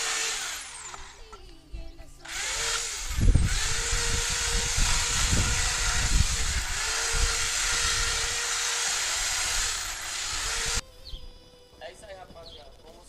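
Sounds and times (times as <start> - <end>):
electric drill whining: 0.0 - 1.5, 2.2 - 10.8.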